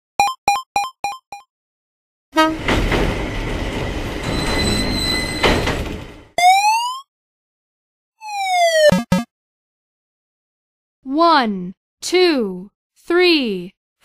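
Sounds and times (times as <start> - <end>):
freight train rumbling: 2.4 - 6.4
high squeal: 4.1 - 5.9.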